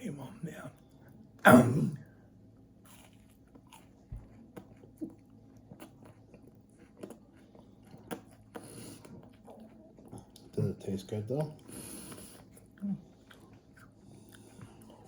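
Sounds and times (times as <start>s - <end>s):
person chewing crispy food: 2.8s - 10.6s, 11.3s - 15.0s.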